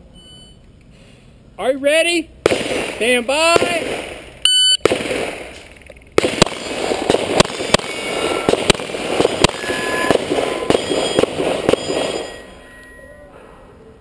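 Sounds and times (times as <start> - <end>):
rapid pistol fire: 2.4 - 12.4.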